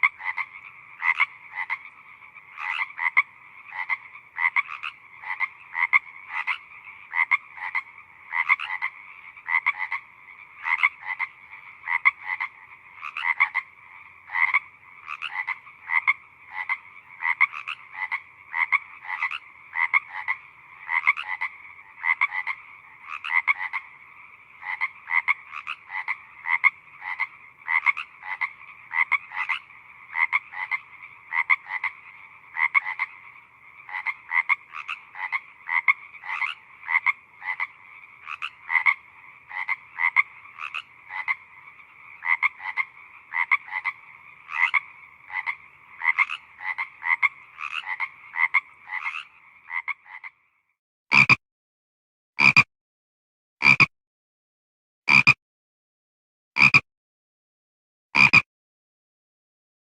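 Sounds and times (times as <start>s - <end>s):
frogs croaking: 0.0s - 51.4s, 52.4s - 52.7s, 53.6s - 53.9s, 55.1s - 55.4s, 56.6s - 56.8s, 58.2s - 58.4s.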